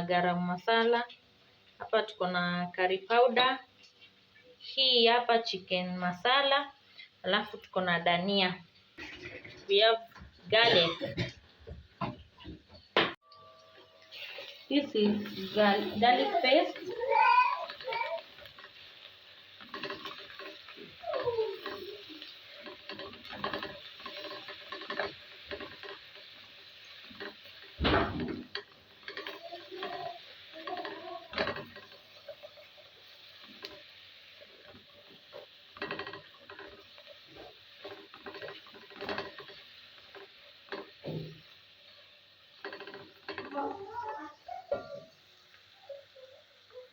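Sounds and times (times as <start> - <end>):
onions sizzling in a pot: 0.0 - 9.1, 9.7 - 46.9
spoon stirring and scraping: 19.6 - 27.7, 28.5 - 41.0.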